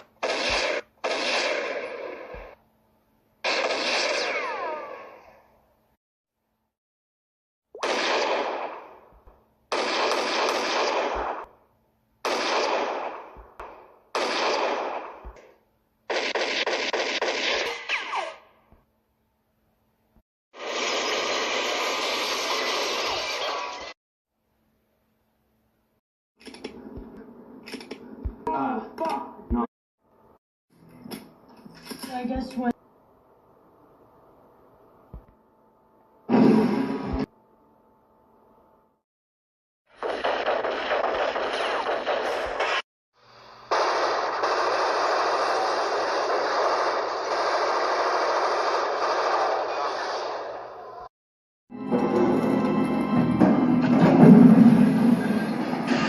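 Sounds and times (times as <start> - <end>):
gunfire bursts: 0.0 - 2.6, 3.4 - 5.1, 7.8 - 9.1, 9.7 - 11.6, 12.2 - 15.4, 16.1 - 18.4, 39.9 - 42.8, 43.7 - 50.3.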